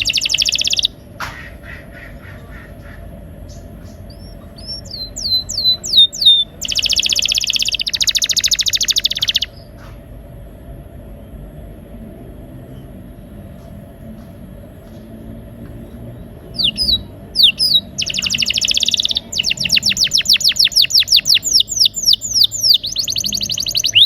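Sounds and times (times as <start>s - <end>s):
canary singing: 0.0s - 9.8s, 16.3s - 24.0s
faint steady hum: 0.0s - 24.0s.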